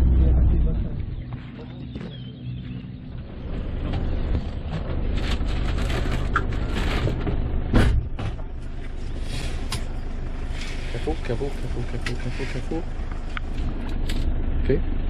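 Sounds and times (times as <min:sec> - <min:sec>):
van road and engine rumble: 0:00.0 - 0:15.0
heavy thump: 0:07.7 - 0:08.5.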